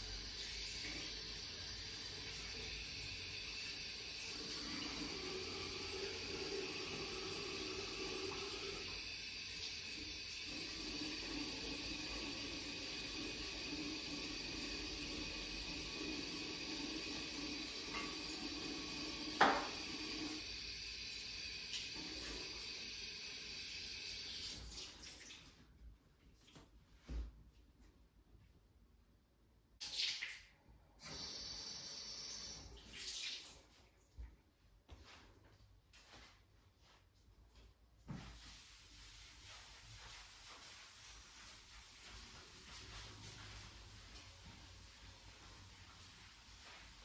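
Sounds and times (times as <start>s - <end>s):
tap water running into sink: 0.1s - 25.4s.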